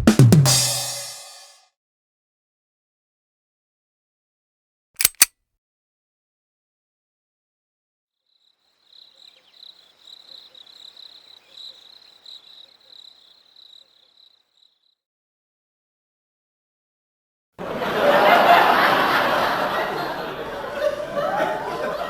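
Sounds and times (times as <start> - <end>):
sharp clicks: 5.0 - 5.3
crickets chirping trill: 8.3 - 15.0.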